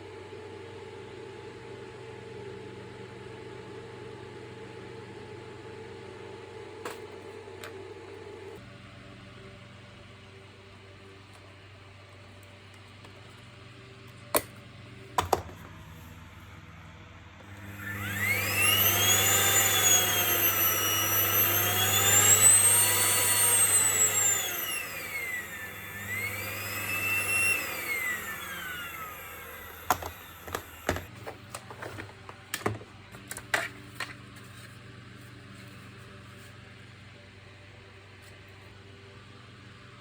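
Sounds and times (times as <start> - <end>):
plastic parts clicking and knocking: 15.2 - 15.8, 29.9 - 34.2
small electric motor whining: 15.2 - 32.1.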